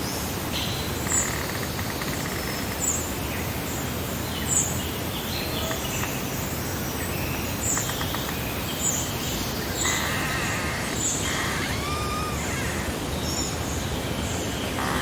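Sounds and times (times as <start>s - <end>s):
background hiss: 0.0s - 15.0s
birds chirping and singing: 7.6s - 15.0s.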